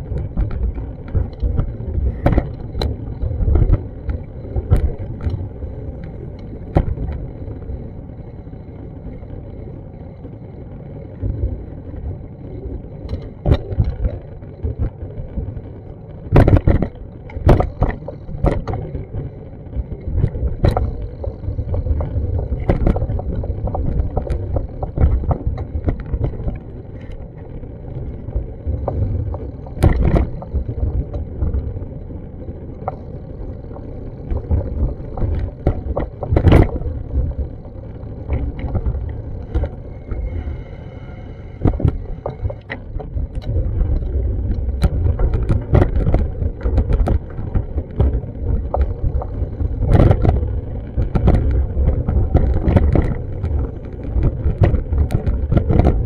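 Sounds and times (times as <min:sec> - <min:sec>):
wind buffeting a microphone: 0:11.2 - 0:56.0.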